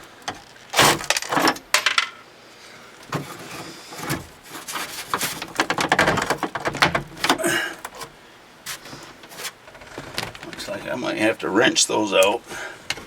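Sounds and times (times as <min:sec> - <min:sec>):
metal tools clinking and rattling: 0:00.3 - 0:02.2.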